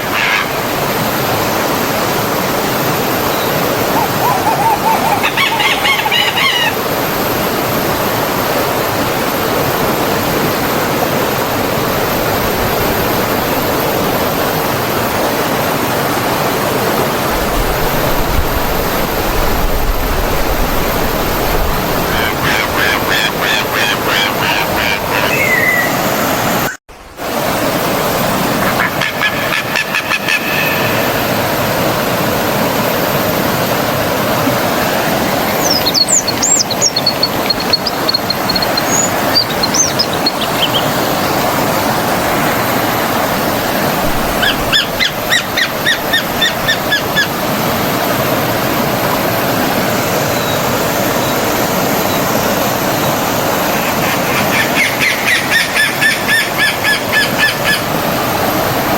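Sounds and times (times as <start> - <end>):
stream water flowing: 0.0 - 58.9
birds chirping: 3.0 - 7.4, 17.3 - 26.8, 34.6 - 47.6, 50.2 - 57.9.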